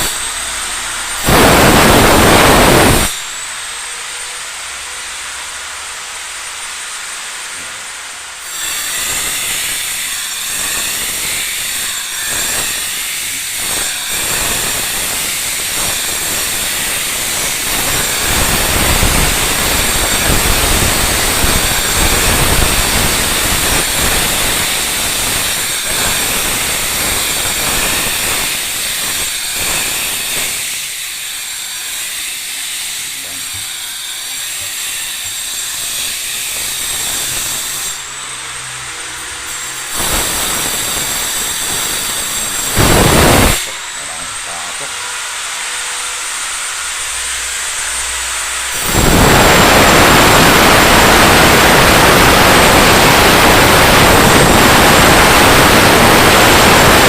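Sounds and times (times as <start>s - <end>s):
power tool whining and hissing: 0.0s - 57.0s.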